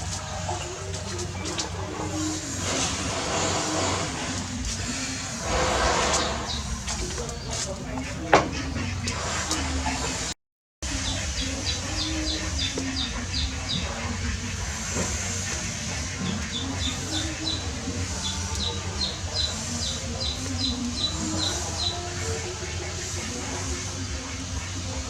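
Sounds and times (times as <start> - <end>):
steady background noise: 0.0 - 25.0
bird chirping: 3.8 - 9.6, 10.9 - 23.2.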